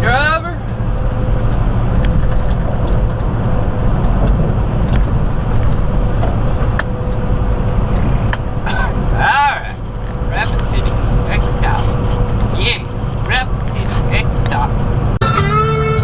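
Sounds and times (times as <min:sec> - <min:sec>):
diesel engine drone: 0:00.0 - 0:16.0
road noise: 0:00.0 - 0:16.0
light ticks: 0:00.7 - 0:07.2.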